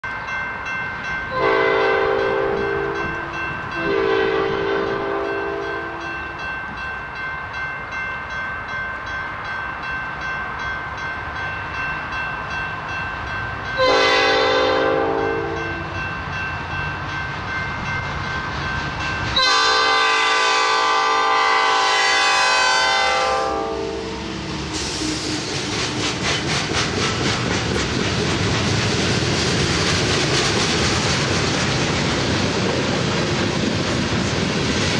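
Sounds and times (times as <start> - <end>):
locomotive air horn blasts: 1.3 - 6.1, 13.8 - 15.9, 19.4 - 24.2
train wheels clattering over rails: 24.3 - 34.9.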